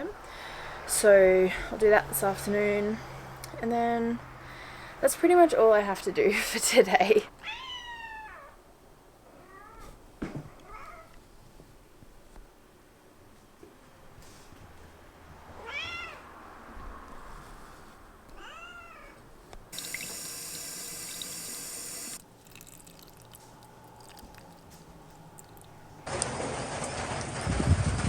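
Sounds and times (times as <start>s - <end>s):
cat meowing: 7.4s - 8.6s, 15.6s - 16.3s, 18.3s - 19.2s
water running from a tap: 19.8s - 23.1s.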